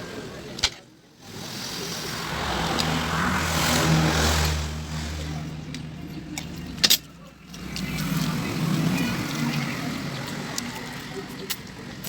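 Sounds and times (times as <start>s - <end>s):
vehicle engine humming: 1.8s - 6.6s.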